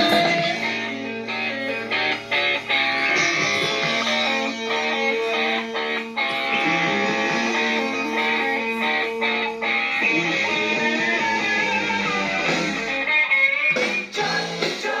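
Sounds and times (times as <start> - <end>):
rock song with electric guitars: 0.0 - 15.0.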